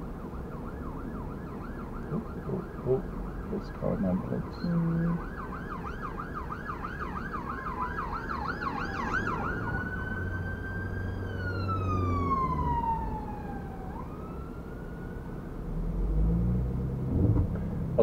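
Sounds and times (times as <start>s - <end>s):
emergency siren yelping and wailing: 0.0s - 16.2s
low vehicle rumble: 0.0s - 18.0s.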